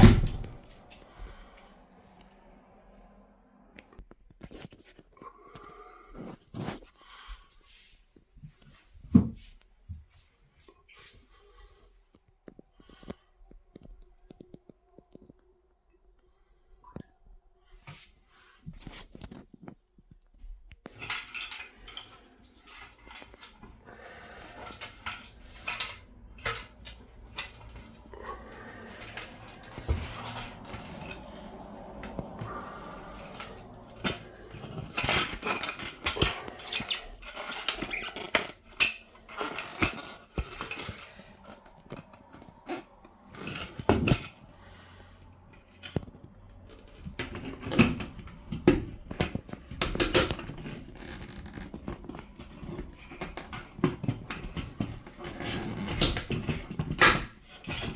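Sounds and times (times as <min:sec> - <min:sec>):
fan parts clicking and clattering: 0:20.9 - 0:57.9
rustling: 0:20.9 - 0:57.9.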